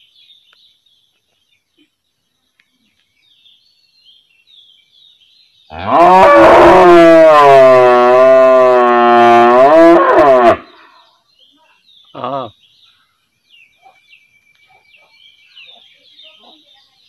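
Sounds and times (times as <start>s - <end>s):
cow mooing: 5.7s - 10.7s.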